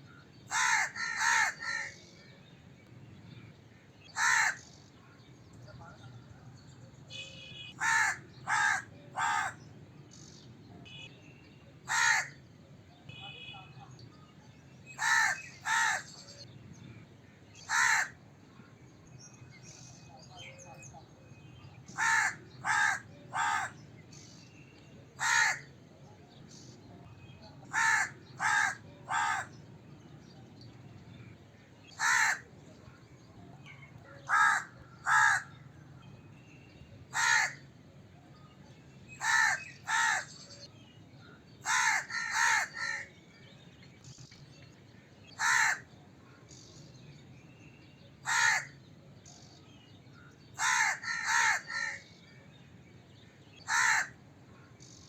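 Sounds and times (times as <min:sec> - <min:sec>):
crow cawing: 0:00.5 - 0:02.0, 0:04.1 - 0:04.6, 0:07.8 - 0:09.6, 0:11.9 - 0:12.4, 0:15.0 - 0:16.1, 0:17.7 - 0:18.2, 0:21.9 - 0:23.8, 0:25.2 - 0:25.7, 0:27.7 - 0:29.5, 0:31.9 - 0:32.5, 0:34.3 - 0:35.6, 0:37.1 - 0:37.6, 0:39.2 - 0:40.3, 0:41.6 - 0:43.1, 0:45.4 - 0:45.9, 0:48.2 - 0:48.8, 0:50.6 - 0:52.0, 0:53.7 - 0:54.2.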